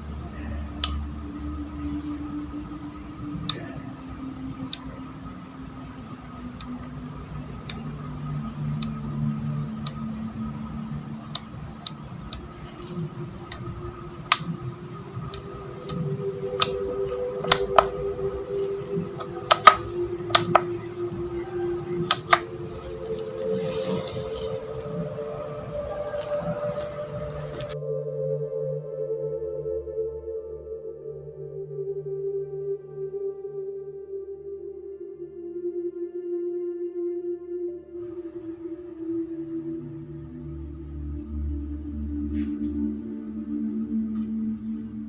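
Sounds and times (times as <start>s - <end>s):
steady high tone: 0.0s - 45.0s
sharp metallic clicks: 11.2s - 27.8s.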